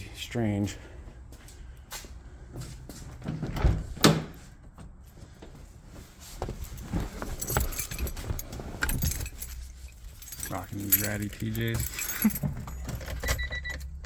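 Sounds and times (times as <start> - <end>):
handling noise: 5.9 - 13.8
keys jangling: 6.6 - 13.5.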